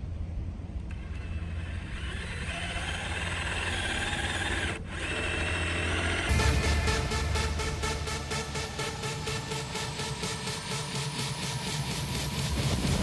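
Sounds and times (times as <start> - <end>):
power drill driving screws: 0.8 - 6.5.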